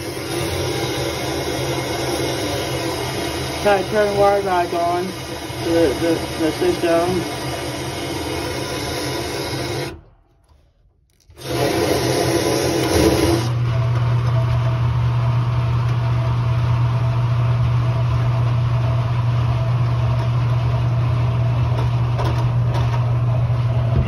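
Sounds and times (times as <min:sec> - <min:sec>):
water pump motor running: 0:00.0 - 0:10.0, 0:11.2 - 0:24.0.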